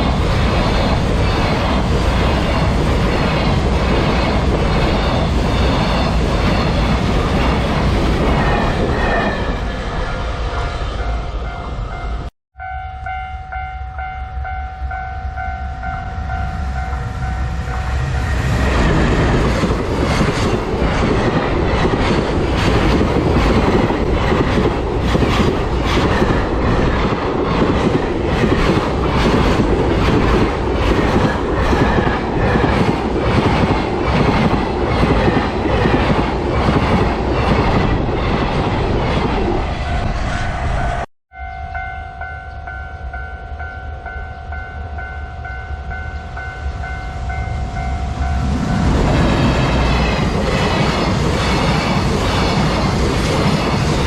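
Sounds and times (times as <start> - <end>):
level crossing bell ringing: 11.1 - 17.9, 41.3 - 48.5.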